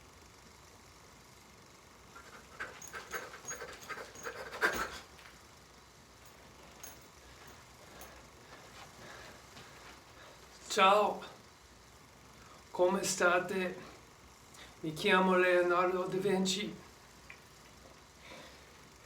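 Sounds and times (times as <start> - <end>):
quick panting breaths: 2.1 - 5.2.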